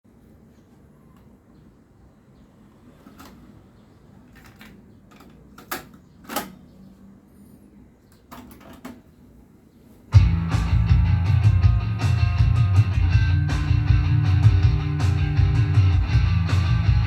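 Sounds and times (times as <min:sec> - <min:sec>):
guitar rock music: 0:10.1 - 0:17.0.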